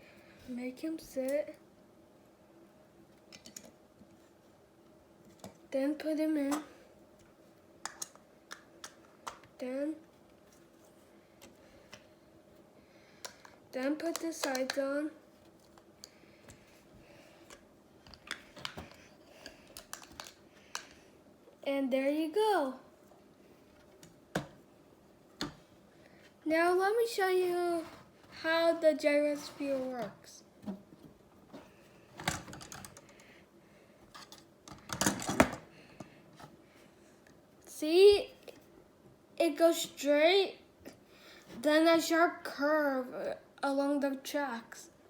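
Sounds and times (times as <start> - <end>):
plastic parts clicking and rattling: 17.4 - 21.0, 32.2 - 33.3, 34.1 - 35.6.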